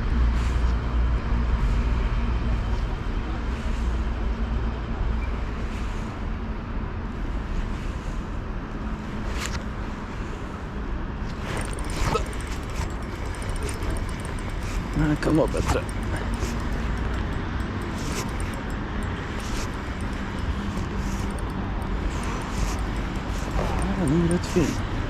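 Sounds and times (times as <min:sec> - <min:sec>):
sharp clicks: 0:11.5 - 0:24.8.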